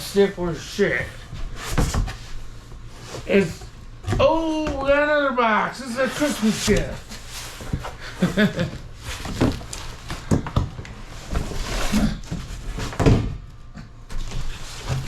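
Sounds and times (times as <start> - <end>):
cardboard box scraping and rustling: 5.9 - 8.0, 9.0 - 10.2.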